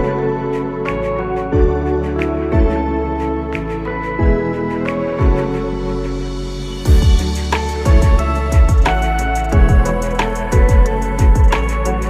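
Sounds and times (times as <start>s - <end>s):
soft new-age instrumental music: 0.0s - 12.0s
low drum hit: 6.9s - 8.9s, 9.6s - 9.9s.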